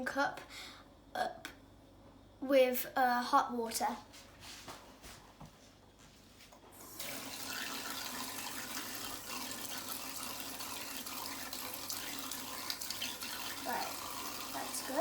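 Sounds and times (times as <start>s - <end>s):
tap water running into plastic cup: 6.8s - 15.0s.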